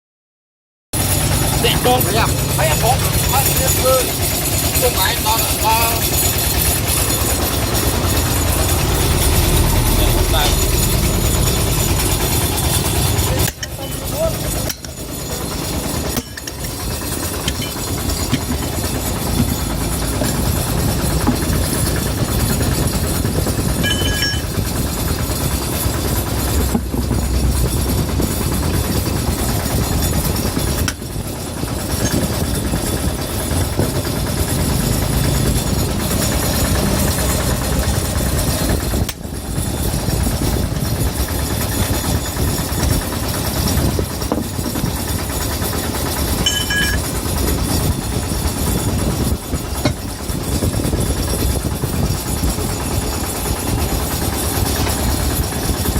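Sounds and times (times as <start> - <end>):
motor vehicle running: 1.0 - 55.9
road rumble noise: 1.0 - 55.9.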